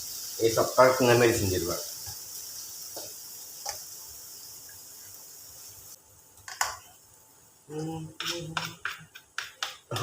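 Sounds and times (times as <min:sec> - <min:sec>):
food sizzling in a pan: 0:00.0 - 0:10.0
person humming: 0:07.7 - 0:08.7.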